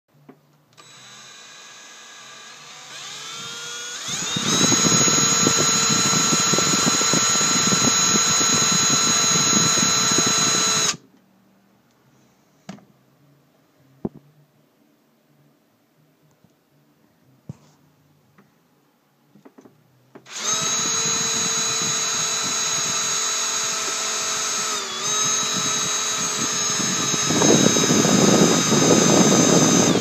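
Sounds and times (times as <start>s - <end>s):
drill bit grinding glass: 0.8s - 11.0s, 20.3s - 30.0s
electric drill whining: 0.8s - 11.0s, 20.2s - 30.0s.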